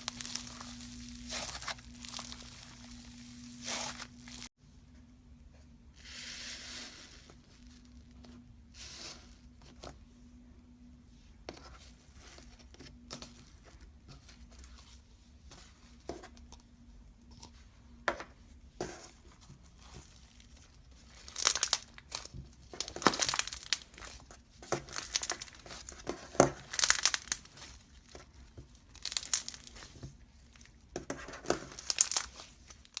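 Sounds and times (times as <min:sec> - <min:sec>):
slime crackling: 0:00.0 - 0:04.5, 0:20.1 - 0:33.0.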